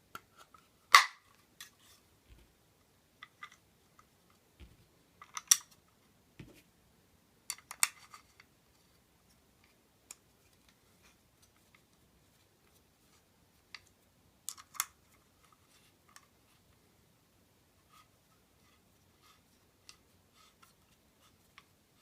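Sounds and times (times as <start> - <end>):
plastic clicks and snaps: 4.6 - 5.8.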